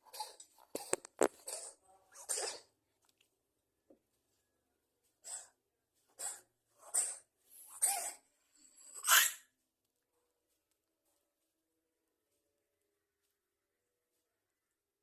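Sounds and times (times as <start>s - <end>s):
cat coughing: 0.1s - 2.7s.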